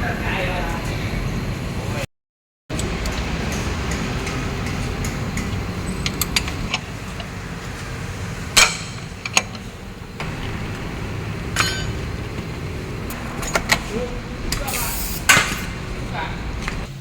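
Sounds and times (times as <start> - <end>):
low background rumble: 4.4 - 16.9
hand tools clinking on metal: 11.6 - 12.0.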